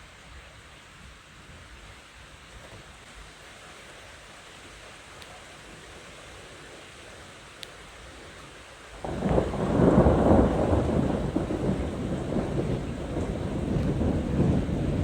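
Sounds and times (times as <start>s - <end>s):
rain hissing: 3.0s - 15.0s
thunder clap and rumble: 9.0s - 15.0s.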